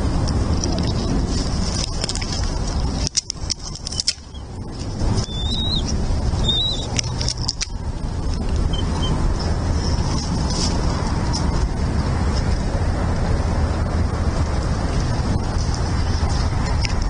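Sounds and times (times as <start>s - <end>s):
low rumble: 0.0s - 17.0s
crackling clicks: 1.6s - 8.8s
high wavering bird chirps: 5.2s - 7.2s.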